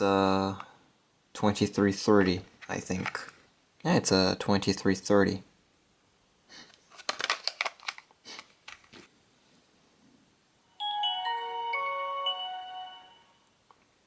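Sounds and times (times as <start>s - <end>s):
phone startup jingle: 10.8s - 13.4s.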